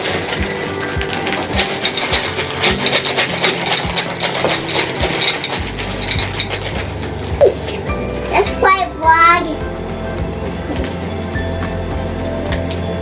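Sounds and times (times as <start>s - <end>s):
candies rattling into plastic: 0.0s - 8.5s.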